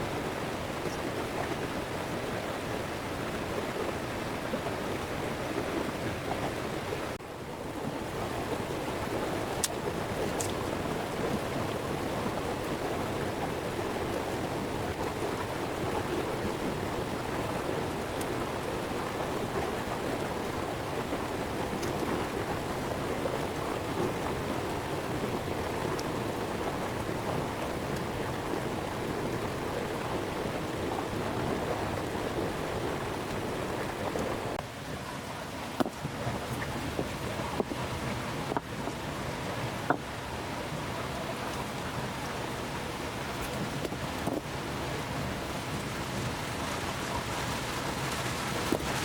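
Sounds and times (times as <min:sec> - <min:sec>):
water rushing: 0:00.0 - 0:49.0.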